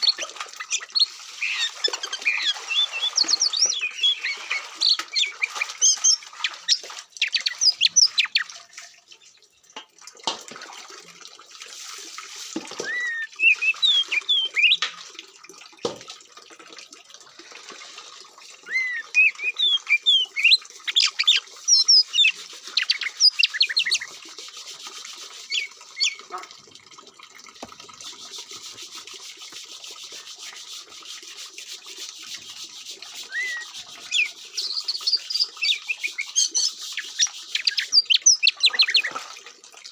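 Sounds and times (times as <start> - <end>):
bird singing whistled notes: 1.4 - 5.0, 12.8 - 14.8, 18.7 - 24.0, 33.3 - 39.1.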